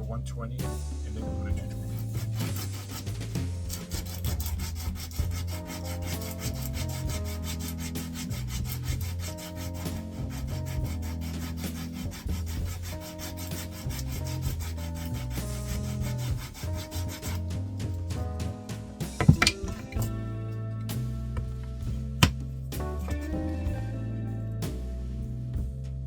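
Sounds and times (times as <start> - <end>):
background music: 0.0 - 26.0
sandpaper rasping on wood: 1.6 - 18.0.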